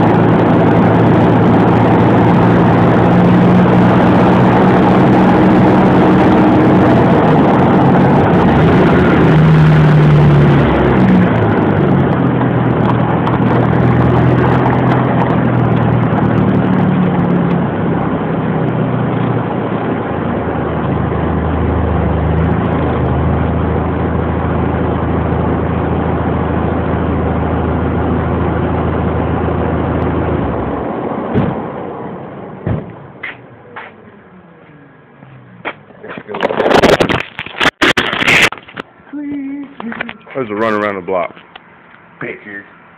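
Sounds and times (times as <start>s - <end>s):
wind rushing over microphone: 0.0s - 21.0s, 36.4s - 38.6s
car engine and road noise: 0.0s - 42.9s.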